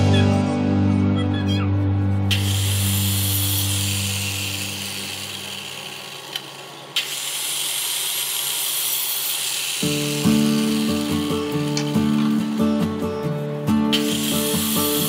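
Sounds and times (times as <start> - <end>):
background music: 0.0 - 5.3, 9.8 - 15.0
power tool hissing on wood: 2.3 - 13.0, 13.9 - 15.0.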